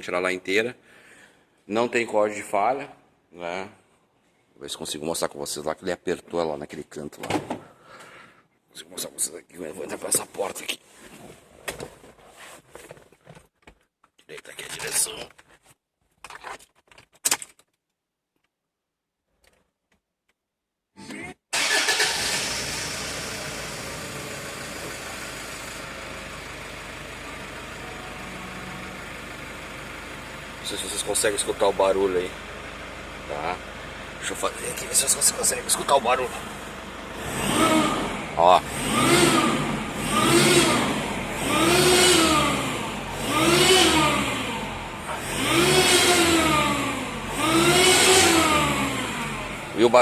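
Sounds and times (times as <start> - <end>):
diesel engine idling: 22.4 - 39.0
turbocharger noise: 34.4 - 49.9.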